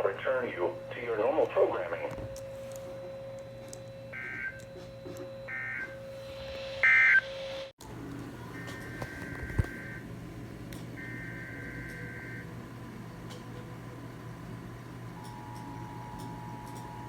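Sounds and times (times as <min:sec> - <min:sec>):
steady tone: 0:03.1 - 0:07.8
warbling two-tone digital bursts: 0:06.7 - 0:07.7.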